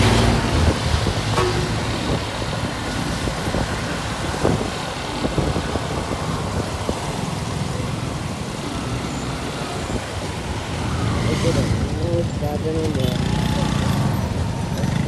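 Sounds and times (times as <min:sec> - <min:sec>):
motorcycle engine rumble: 0:00.0 - 0:08.8
road noise: 0:00.0 - 0:15.0.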